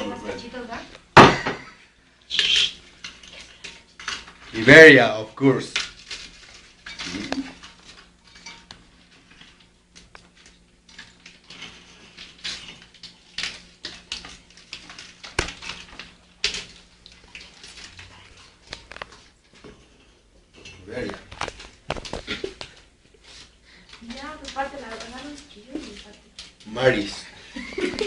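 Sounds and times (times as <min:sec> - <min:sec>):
utensils clinking in a bowl: 0:02.4 - 0:22.7, 0:23.4 - 0:28.0.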